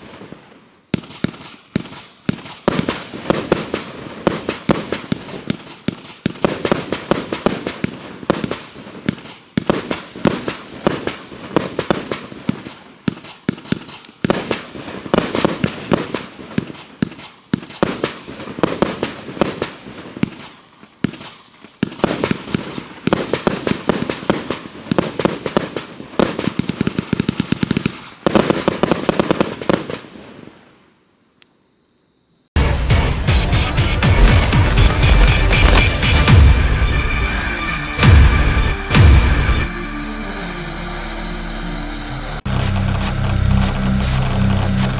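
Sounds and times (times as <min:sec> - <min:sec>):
firework battery launches and bursts: 0:33.6 - 0:44.9.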